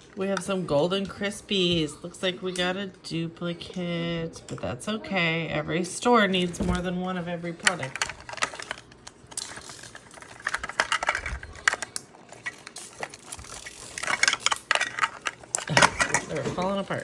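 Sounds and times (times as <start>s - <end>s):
plastic toy pieces clicking: 7.6s - 16.7s
plastic wrapping crinkling: 7.6s - 17.0s.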